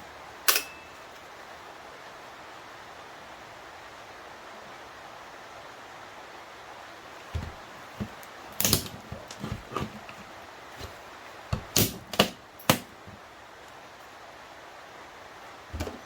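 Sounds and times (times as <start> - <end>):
metal parts knocking and clicking: 7.4 - 13.2.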